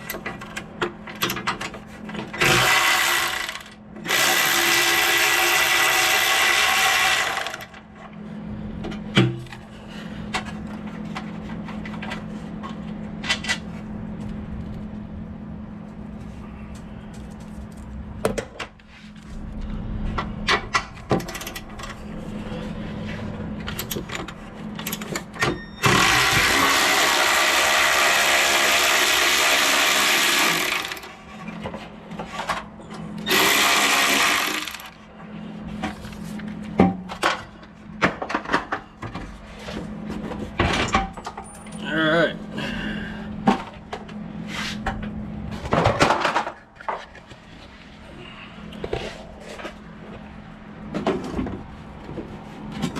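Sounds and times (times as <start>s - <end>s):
clanks of tools and metal parts: 0.0s - 4.2s, 23.6s - 26.4s, 40.1s - 42.1s
steady low hum: 0.0s - 52.9s.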